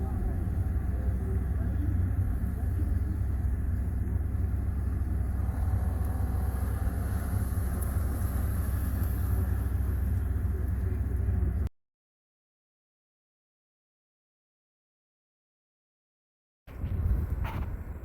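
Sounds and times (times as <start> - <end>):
vehicle rumble: 0.0 - 11.7, 16.7 - 18.0.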